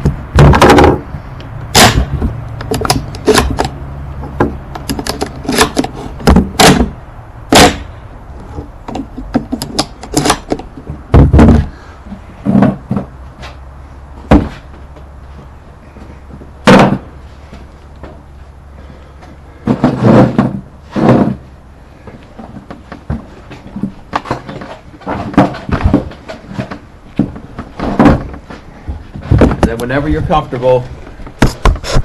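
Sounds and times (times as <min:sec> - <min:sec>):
loud knocks: 0:00.0 - 0:01.1, 0:05.5 - 0:07.9, 0:08.9 - 0:13.2, 0:14.3 - 0:14.6, 0:16.6 - 0:17.2
steady low hum: 0:00.0 - 0:32.0
metallic clicks and knocks: 0:02.2 - 0:06.8.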